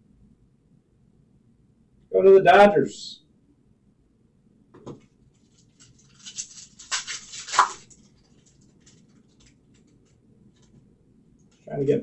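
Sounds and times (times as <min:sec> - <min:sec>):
wrapper tearing and crinkling: 0:05.4 - 0:10.0.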